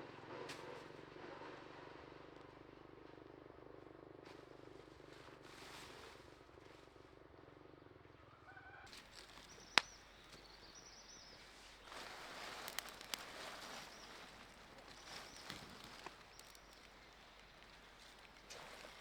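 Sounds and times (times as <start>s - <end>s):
birds chirping: 8.9s - 19.0s.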